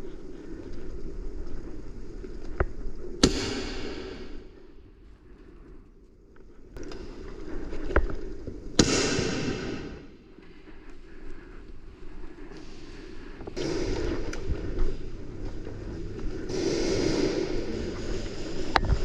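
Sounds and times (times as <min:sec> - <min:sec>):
airsoft gunshots: 0:08.8 - 0:10.0.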